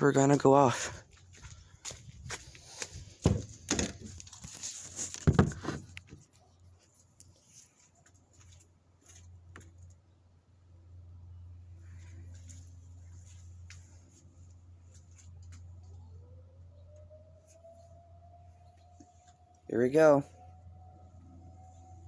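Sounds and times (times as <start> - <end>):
short knocks and rustles: 2.9 - 6.4.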